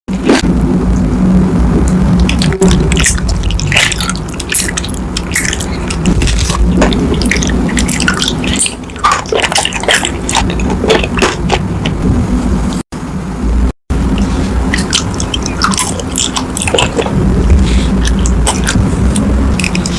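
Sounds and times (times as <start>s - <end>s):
steady low hum: 0.1s - 19.9s
wet sticky food squishing: 2.1s - 12.0s, 14.2s - 19.9s.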